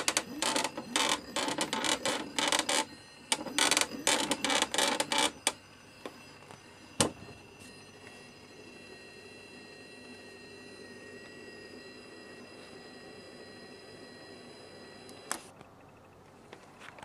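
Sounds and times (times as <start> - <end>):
high controller whistle: 0.0 - 15.5
motor rasping and creaking: 0.0 - 16.1.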